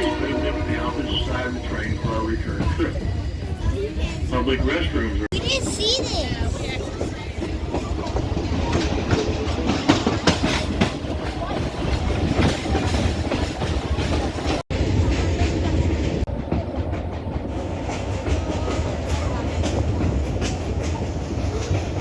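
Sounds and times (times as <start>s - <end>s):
train rumbling on rails: 0.0s - 22.0s
train wheel clicks: 5.6s - 15.6s.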